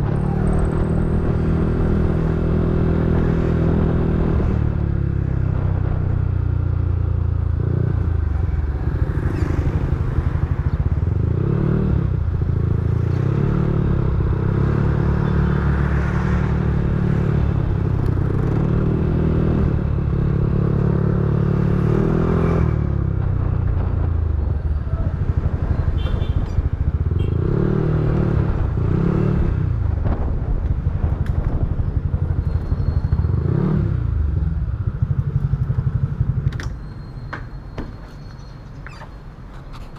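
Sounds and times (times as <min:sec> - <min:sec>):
scooter engine idling and revving: 0:00.0 - 0:39.0.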